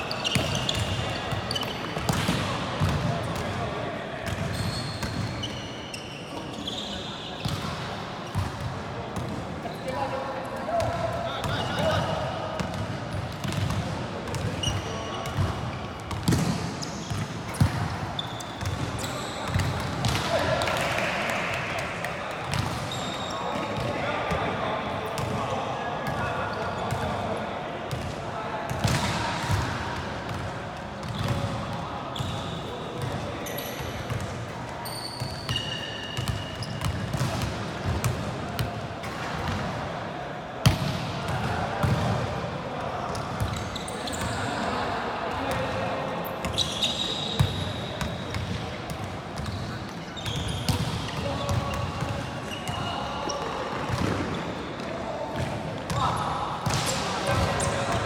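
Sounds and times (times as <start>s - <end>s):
sneakers squeaking on court: 0.0s - 3.1s, 4.2s - 9.9s, 12.7s - 20.7s, 22.5s - 23.9s, 26.1s - 27.1s, 31.0s - 31.5s, 32.1s - 39.6s, 43.1s - 44.8s, 45.4s - 58.0s.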